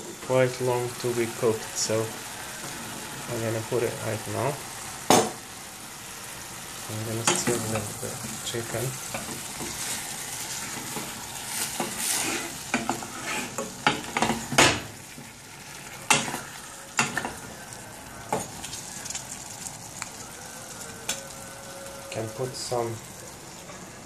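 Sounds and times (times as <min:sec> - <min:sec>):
food sizzling in oil: 0:00.0 - 0:24.0
spoon scraping a pot: 0:09.1 - 0:14.6.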